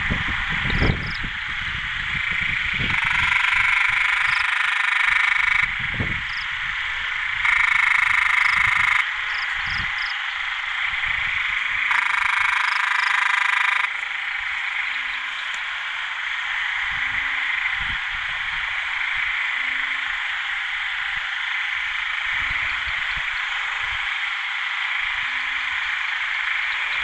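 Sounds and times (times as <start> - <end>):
frog chorus calling: 0.0 - 27.0
nearby frog calling loudly: 0.5 - 6.6, 7.2 - 10.1, 10.8 - 23.2.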